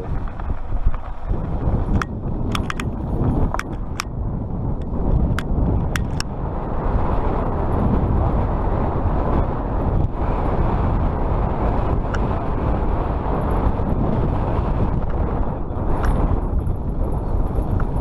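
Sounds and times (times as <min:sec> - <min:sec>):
bike tyre noise: 0:00.0 - 0:18.0
wind rumble over microphone: 0:00.0 - 0:18.0
sharp clicks: 0:02.0 - 0:04.1.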